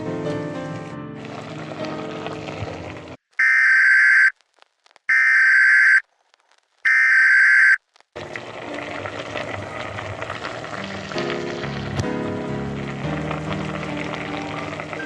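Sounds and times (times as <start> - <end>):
long electronic beeps: 3.4 - 4.3, 5.1 - 6.0, 6.9 - 7.8.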